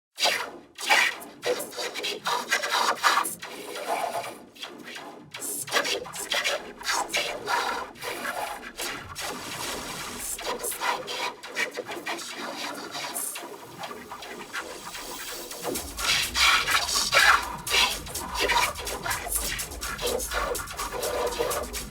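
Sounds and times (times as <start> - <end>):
hiss bursts in speech rhythm: 14.8 - 21.9.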